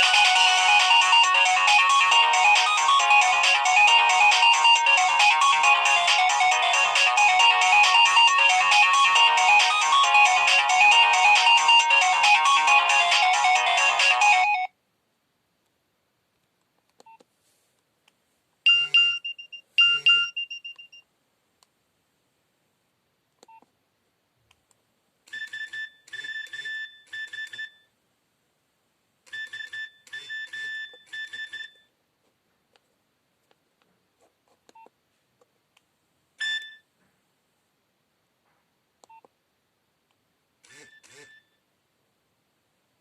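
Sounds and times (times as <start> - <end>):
phone beeps: 18.7 - 21.0, 25.3 - 27.9, 29.3 - 31.9, 36.4 - 36.9, 40.7 - 41.6
rapid phone chirping: 18.7 - 21.0, 40.6 - 41.6.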